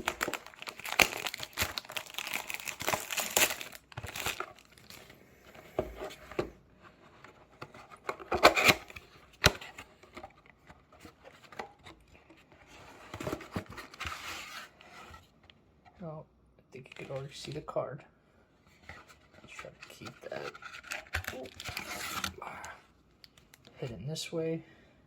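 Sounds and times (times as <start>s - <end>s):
plastic and foil packaging crinkling: 0.0s - 5.2s, 19.5s - 23.7s.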